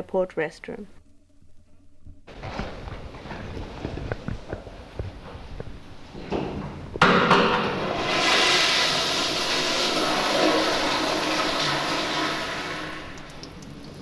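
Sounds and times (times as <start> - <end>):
toilet flushing: 7.0 - 14.0.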